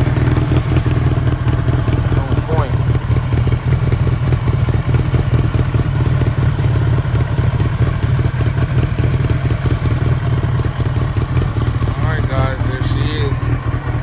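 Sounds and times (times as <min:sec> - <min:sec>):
motorcycle engine running: 0:00.0 - 0:14.0.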